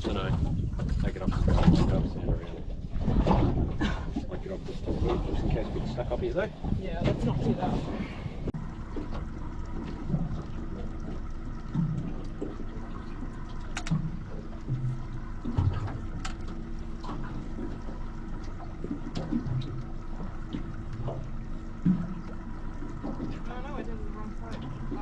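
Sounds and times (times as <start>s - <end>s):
water lapping against boat hull: 0.0s - 25.0s
steady hum: 1.8s - 25.0s
small splashy ticks: 8.9s - 23.6s.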